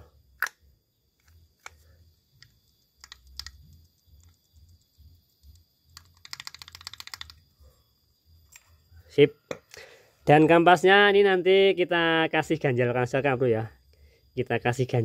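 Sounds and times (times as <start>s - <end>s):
rapid clicks: 1.6s - 7.4s.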